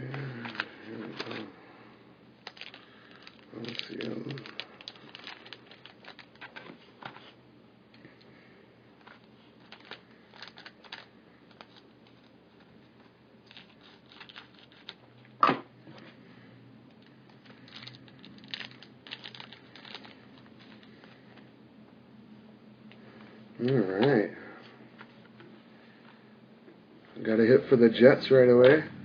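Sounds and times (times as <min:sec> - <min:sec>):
pack wrapper tearing: 0:00.0 - 0:01.5, 0:02.4 - 0:06.7, 0:09.1 - 0:12.7, 0:13.4 - 0:15.1, 0:17.3 - 0:21.0
wrapper crinkling: 0:00.0 - 0:01.5, 0:02.4 - 0:07.4, 0:09.0 - 0:15.1, 0:17.0 - 0:21.4
cards being handled: 0:00.1 - 0:01.5.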